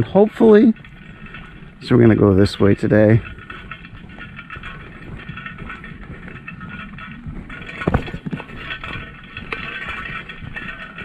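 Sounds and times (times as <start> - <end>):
footsteps crunching on a trail: 0.0 - 11.0.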